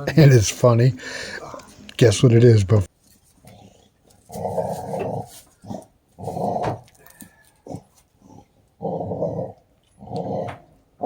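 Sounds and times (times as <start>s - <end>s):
dog growling: 3.4s - 11.0s.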